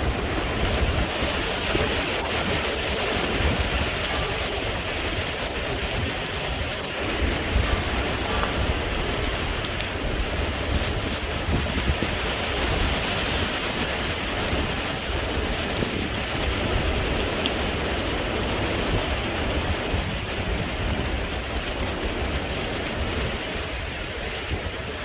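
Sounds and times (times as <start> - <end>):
heavy rain hissing: 0.0 - 25.0
wind gusts rumbling on microphone: 0.0 - 25.0.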